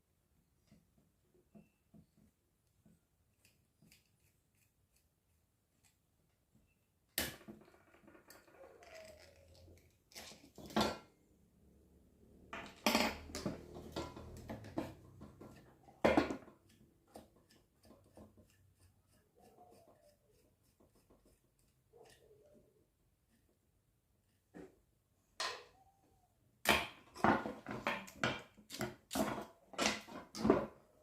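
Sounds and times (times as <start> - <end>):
scraping and handling noise: 7.4 - 11.3, 12.5 - 22.6, 26.9 - 31.0.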